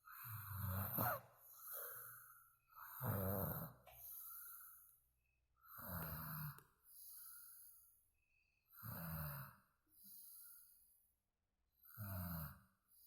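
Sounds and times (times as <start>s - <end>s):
soft airy breaths: 0.0s - 5.8s, 6.7s - 8.5s, 9.8s - 11.2s
person snoring: 0.1s - 2.1s, 2.8s - 3.8s, 5.7s - 6.6s, 8.8s - 9.6s, 11.9s - 12.6s.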